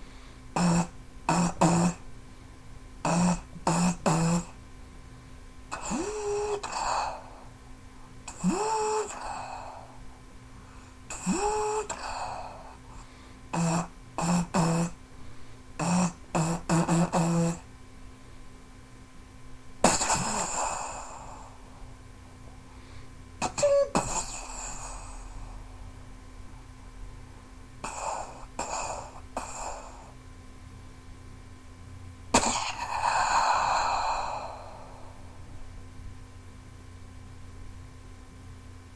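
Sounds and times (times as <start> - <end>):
mouth-made war machine sounds: 8.3 - 9.3, 11.1 - 12.0, 23.4 - 24.9.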